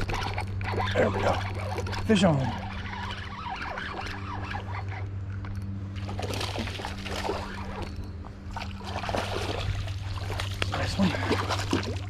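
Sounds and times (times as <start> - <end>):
creek water trickling and splashing: 0.0 - 5.1, 5.9 - 12.0
steady low hum: 0.0 - 12.0.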